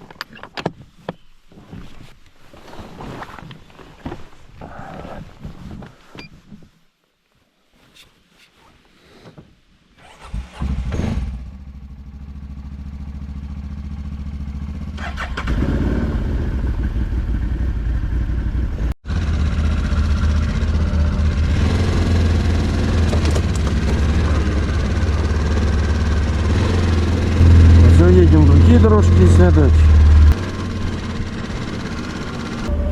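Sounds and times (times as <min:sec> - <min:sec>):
atv engine starting and idling: 0:10.0 - 0:32.9.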